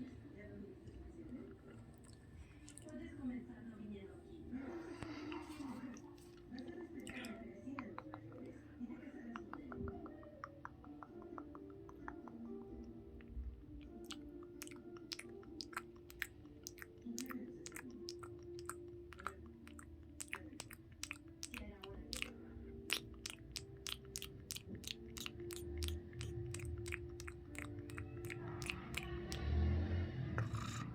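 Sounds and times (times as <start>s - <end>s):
soft background music: 0.0s - 30.9s
chewing with crisp crunches: 5.1s - 8.6s, 9.3s - 29.6s
mouth clicks: 5.3s - 29.6s, 30.3s - 30.9s.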